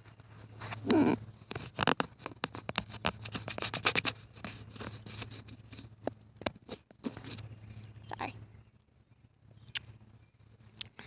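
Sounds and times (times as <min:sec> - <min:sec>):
fingers scraping on phone: 0:00.6 - 0:07.4.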